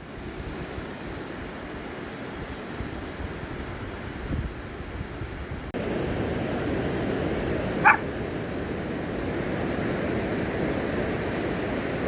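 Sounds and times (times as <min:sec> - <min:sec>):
animal yelp: 0:07.8 - 0:08.1.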